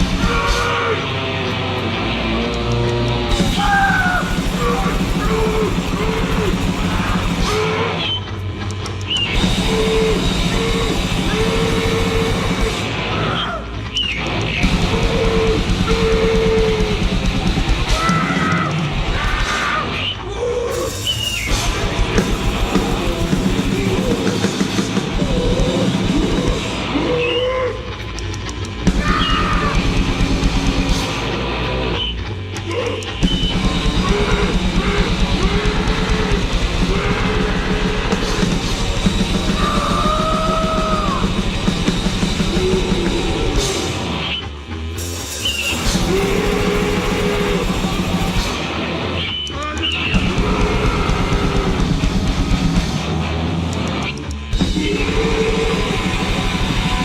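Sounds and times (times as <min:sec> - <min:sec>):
distorted noise and drums: 0:00.0 - 0:57.0
squealing pitched tones: 0:36.3 - 0:48.6.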